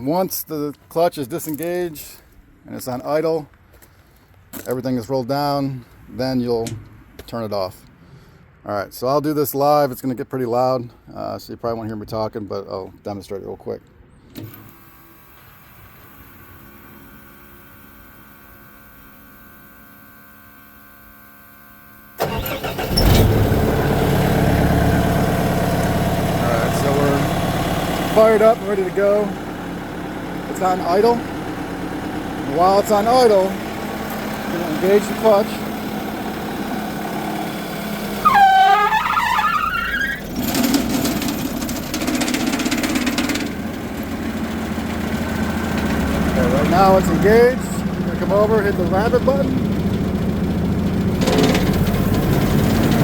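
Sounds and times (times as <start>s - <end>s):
diesel engine starter cranking: 14.3s - 19.8s, 21.7s - 53.0s
diesel engine idling: 15.2s - 53.0s
loud squeal: 38.2s - 40.3s.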